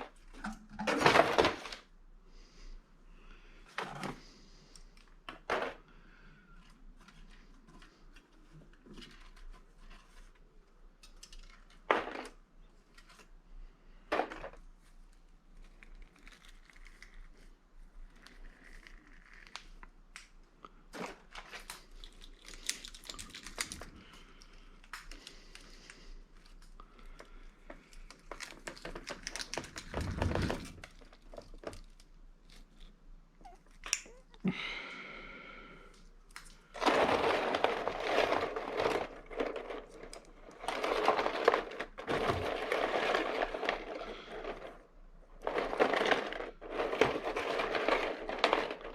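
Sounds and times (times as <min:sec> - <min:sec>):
clicks scrapes and crinkling: 0:14.2 - 0:34.2, 0:36.3 - 0:44.8.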